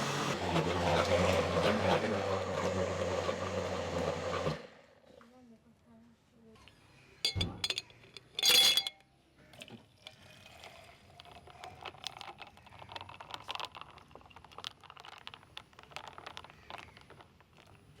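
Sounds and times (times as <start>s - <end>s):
kitchen items clicking and tapping: 7.3s - 9.0s.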